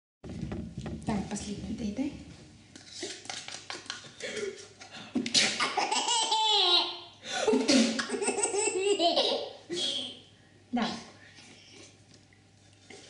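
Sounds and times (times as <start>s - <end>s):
baby laughing: 5.6s - 7.0s, 8.0s - 10.2s.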